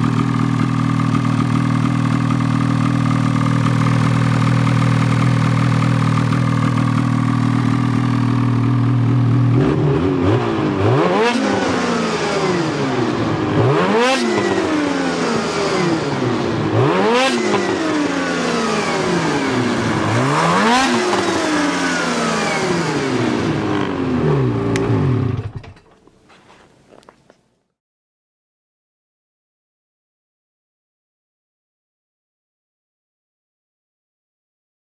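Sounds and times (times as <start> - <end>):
snowmobile engine idling and revving: 0.0 - 26.7.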